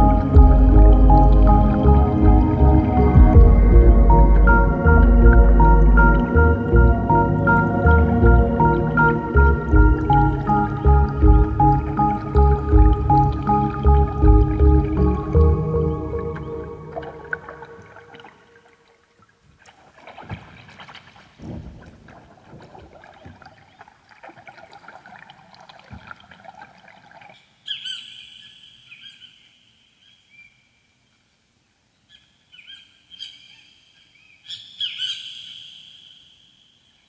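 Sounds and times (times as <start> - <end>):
low thuds: 0.0 - 15.6
ambient electronic music: 0.0 - 18.7.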